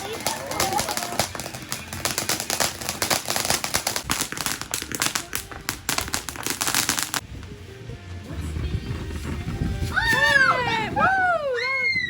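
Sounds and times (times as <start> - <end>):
firework crackling: 0.0 - 7.4.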